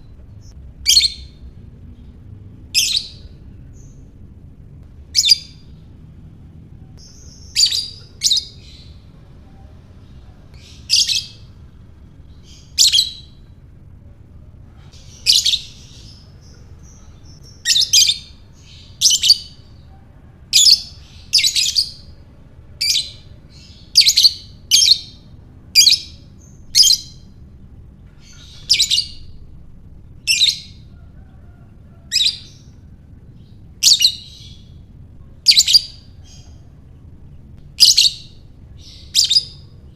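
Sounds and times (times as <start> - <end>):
lovebird chirping: 0.0 - 1.5, 2.7 - 4.0, 5.1 - 5.8, 7.0 - 13.5, 14.8 - 22.2, 22.8 - 27.4, 28.1 - 29.5, 30.1 - 36.8, 37.7 - 39.9.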